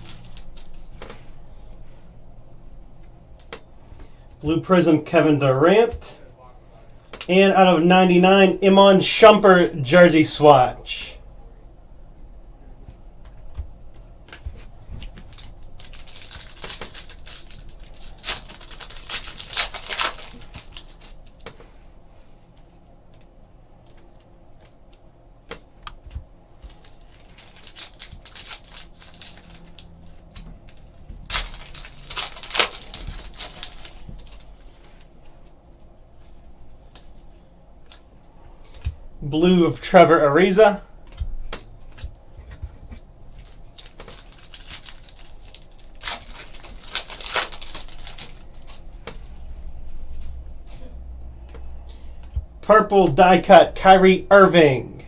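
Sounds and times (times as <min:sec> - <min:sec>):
card pack wrappers crinkling: 0:00.0 - 0:01.3, 0:14.6 - 0:21.6, 0:26.6 - 0:35.1, 0:43.3 - 0:49.0
low room hum: 0:00.0 - 0:55.0.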